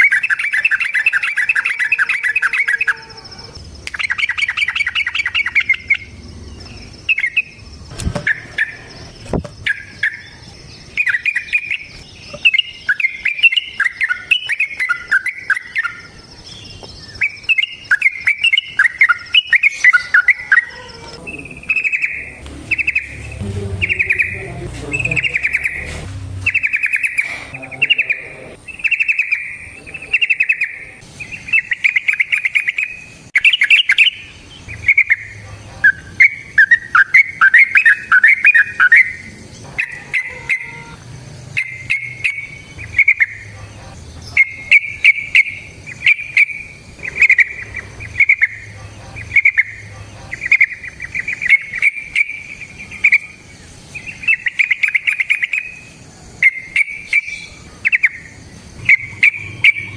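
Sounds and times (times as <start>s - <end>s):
faint high insect-like tone: 0.0s - 24.4s
bird singing trilled phrases: 0.0s - 59.9s.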